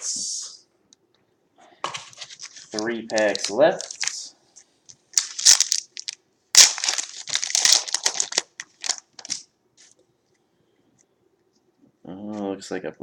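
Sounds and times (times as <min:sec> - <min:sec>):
wrapper tearing and crinkling: 0:02.1 - 0:04.3, 0:05.2 - 0:09.5.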